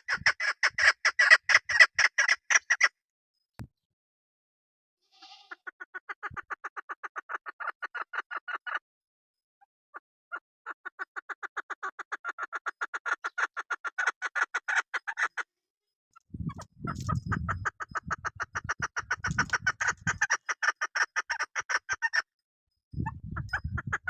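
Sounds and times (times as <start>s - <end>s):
partridge clucking calls: 0.0s - 2.9s, 5.2s - 8.8s, 10.3s - 15.5s, 16.2s - 22.3s, 23.0s - 24.0s.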